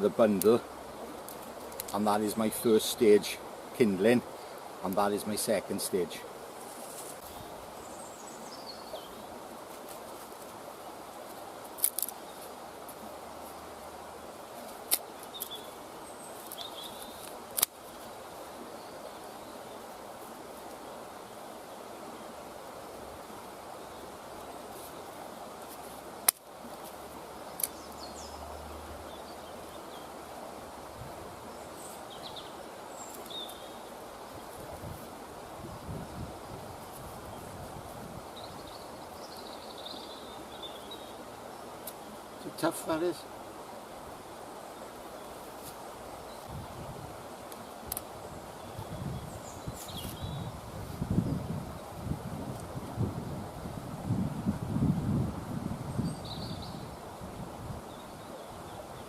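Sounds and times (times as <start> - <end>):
outdoor ambience: 0.0 - 59.0
sharp clicks or snaps: 16.5 - 17.8, 27.6 - 27.8, 47.5 - 48.1
sharp crack: 17.2 - 17.8, 26.2 - 26.5.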